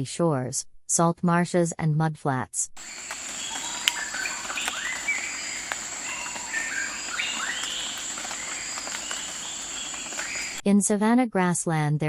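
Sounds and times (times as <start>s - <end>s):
bird calls: 2.8s - 10.6s
high-pitched insect trill: 2.8s - 10.6s.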